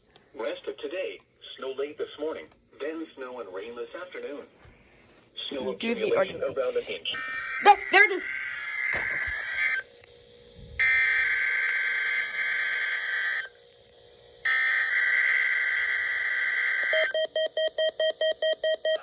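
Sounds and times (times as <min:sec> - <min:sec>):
rapid alert beeping: 0:07.2 - 0:08.3.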